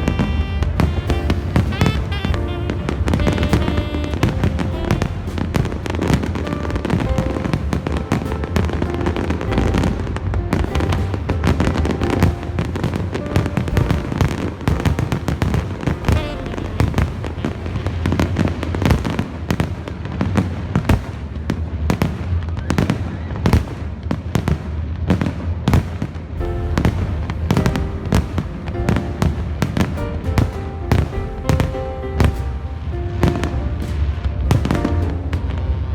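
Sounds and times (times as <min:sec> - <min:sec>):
low rumble: 0:00.0 - 0:15.2, 0:26.4 - 0:35.9
show music: 0:00.0 - 0:19.6, 0:26.4 - 0:35.9
fireworks bursting and crackling: 0:00.0 - 0:35.9.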